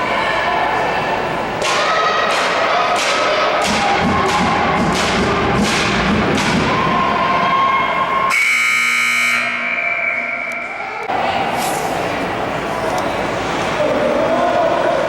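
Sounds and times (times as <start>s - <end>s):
ice rink ambience: 0.0s - 15.0s
electronic buzzer tone: 8.3s - 10.6s.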